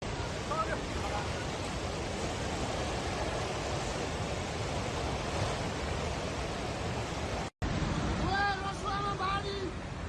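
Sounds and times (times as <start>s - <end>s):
river water rushing: 0.0s - 10.0s.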